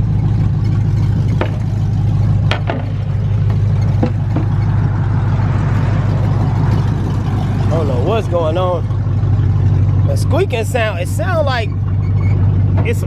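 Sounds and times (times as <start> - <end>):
car engine idling: 0.0 - 13.0
short squeaks: 2.8 - 5.3, 11.6 - 13.0.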